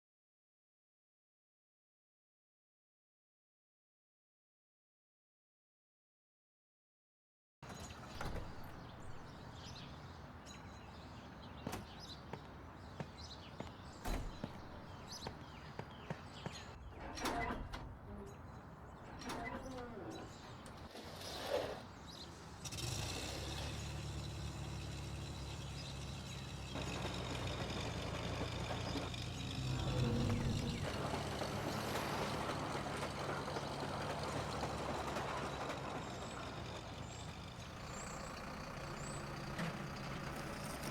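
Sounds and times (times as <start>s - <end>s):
birds chirping: 7.6s - 40.9s
heavy machine engine droning: 22.3s - 40.9s.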